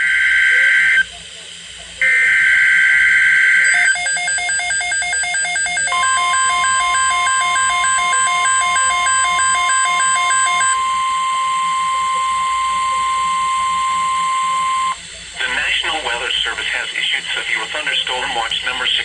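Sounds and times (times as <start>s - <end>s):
steady warning alarm tone: 0.0s - 1.2s, 2.0s - 19.0s
rapid two-pitch electronic beeping: 3.1s - 15.8s.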